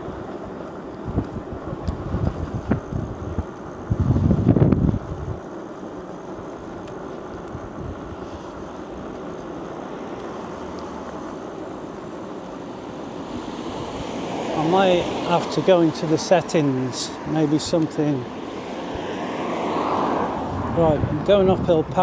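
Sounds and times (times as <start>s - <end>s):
wind buffeting microphone: 0.9s - 5.5s, 7.4s - 8.3s, 18.7s - 22.0s.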